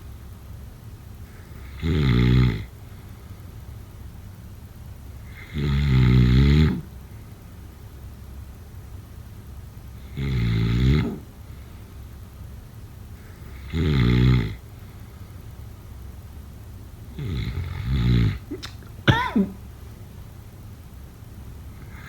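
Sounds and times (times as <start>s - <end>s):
snoring: 1.4s - 2.7s, 5.3s - 6.9s, 10.0s - 11.3s, 13.3s - 14.6s, 17.1s - 18.5s.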